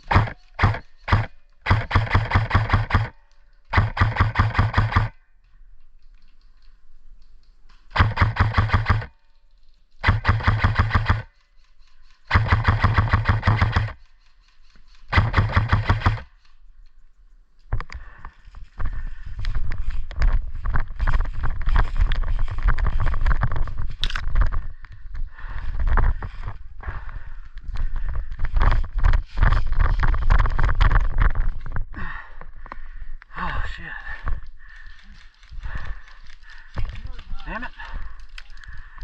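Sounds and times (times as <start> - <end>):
airsoft rifle full-auto bursts: 0.0 - 5.2, 7.9 - 9.1, 10.0 - 11.4, 12.2 - 14.1, 15.1 - 16.3
rustling and knocking: 19.5 - 26.6.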